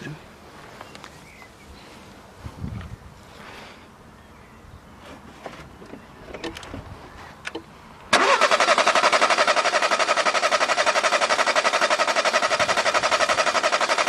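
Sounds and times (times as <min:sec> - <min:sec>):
starter motor cranking engine: 0:08.1 - 0:14.0.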